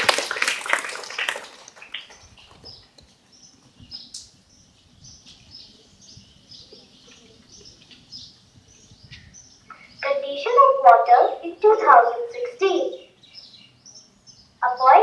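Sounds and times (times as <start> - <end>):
high-pitched bird chirps: 6.7 - 15.0.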